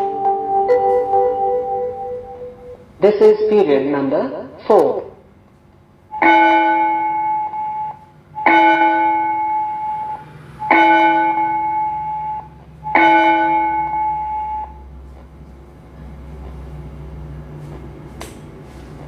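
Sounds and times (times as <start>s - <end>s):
gong-like bell chime: 6.2s - 14.9s.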